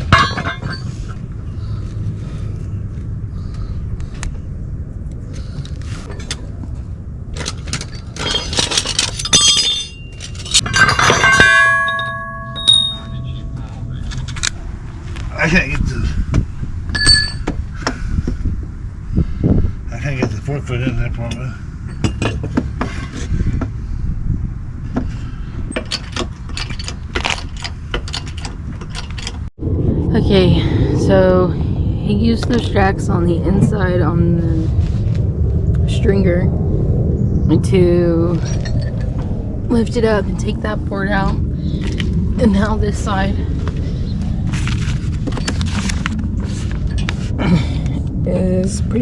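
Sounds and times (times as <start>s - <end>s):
metal tools clattering: 0.0s - 1.0s, 7.4s - 14.5s, 25.7s - 29.4s
steady low rumble: 0.0s - 49.0s
loud ringing metal clang: 9.2s - 13.7s.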